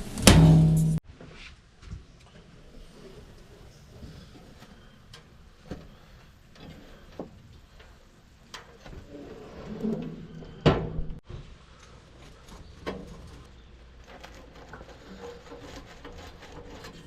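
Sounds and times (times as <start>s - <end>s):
loud thud: 0.0s - 1.0s.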